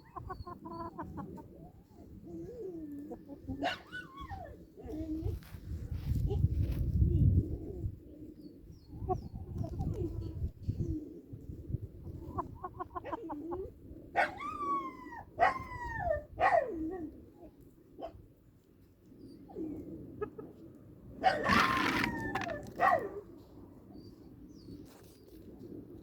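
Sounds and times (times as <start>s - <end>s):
chicken clucking: 0.0s - 3.8s, 12.1s - 13.7s
farm animal calls: 21.2s - 23.0s.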